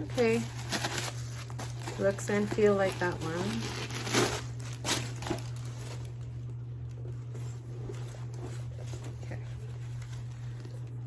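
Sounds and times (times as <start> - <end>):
steady low hum: 0.0 - 11.0
handbag rustling and tapping: 7.1 - 10.8.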